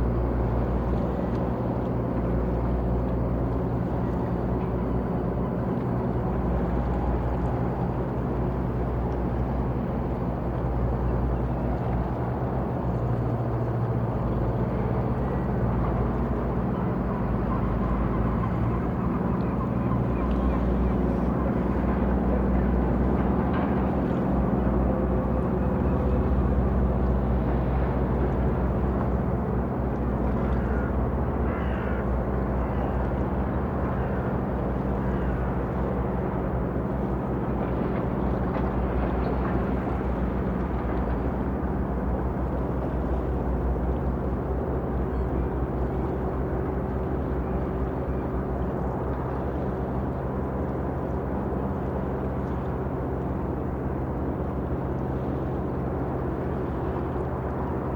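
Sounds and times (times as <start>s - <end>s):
ship engine drone: 0.0s - 57.9s
water lapping against hull: 0.0s - 57.9s
faint bird calls: 30.4s - 33.2s.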